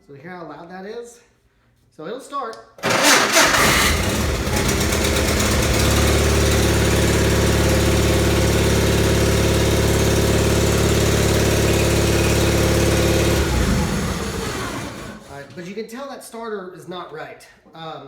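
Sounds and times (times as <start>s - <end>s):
tractor engine idling: 2.8s - 15.6s.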